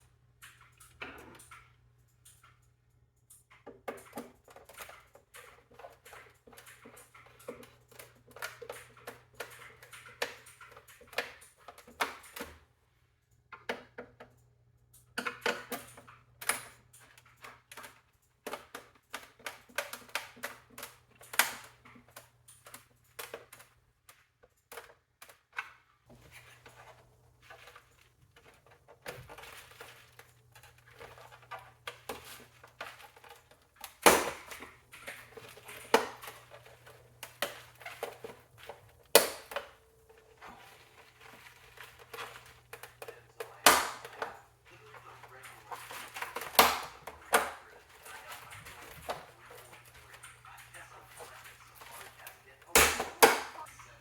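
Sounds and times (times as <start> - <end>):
hands clicking on computer housing: 15.2 - 53.7.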